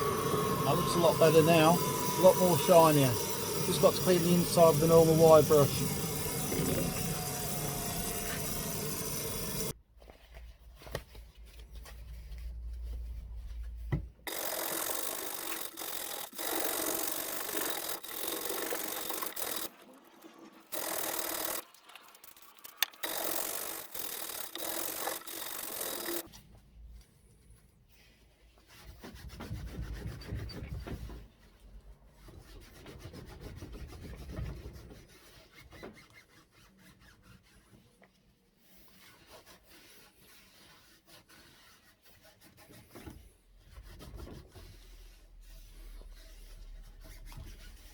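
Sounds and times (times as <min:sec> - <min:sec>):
wire brush scrubbing metal: 0:00.0 - 0:09.7.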